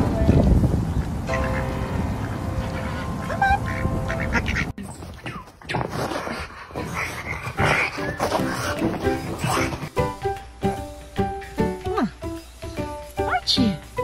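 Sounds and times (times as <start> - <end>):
parrot squawking: 2.6 - 4.7.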